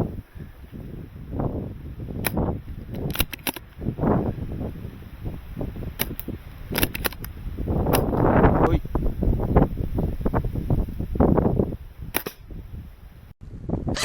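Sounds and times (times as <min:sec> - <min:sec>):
wind buffeting microphone: 0:00.0 - 0:14.0
airsoft gun shots: 0:12.1 - 0:12.4.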